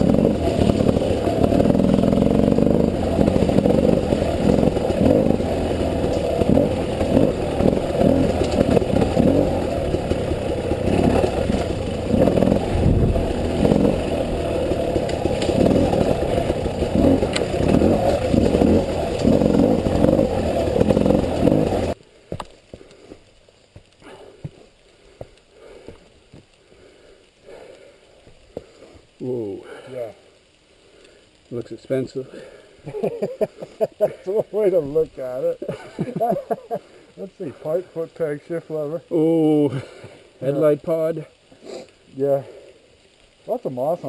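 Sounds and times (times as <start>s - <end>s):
motorcycle engine revving unevenly: 0.0s - 22.0s, 32.9s - 40.9s
faint clicks and ticks: 0.0s - 44.0s.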